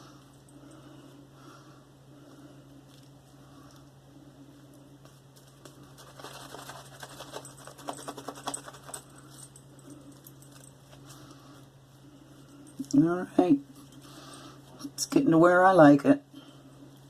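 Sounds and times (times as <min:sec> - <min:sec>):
shaving brush squishing lather: 0:05.8 - 0:09.0.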